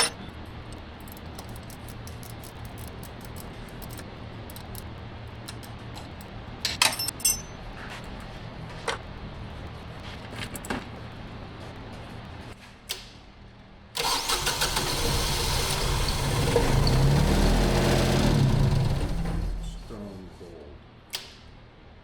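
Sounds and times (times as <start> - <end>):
diesel engine starting and running: 14.0 - 20.1.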